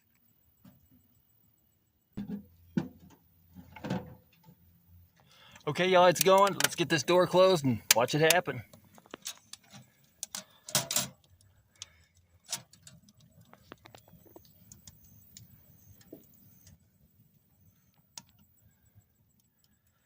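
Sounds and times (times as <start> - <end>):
wood fire crackling and popping: 7.8 - 16.8.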